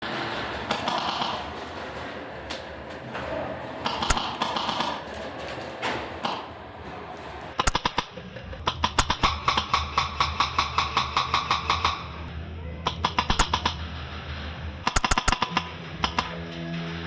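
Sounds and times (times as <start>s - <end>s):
indistinct background noise: 0.1s - 17.0s
airsoft guns firing: 4.0s - 5.0s, 7.6s - 8.2s, 8.8s - 11.1s, 12.9s - 13.8s, 14.9s - 16.3s.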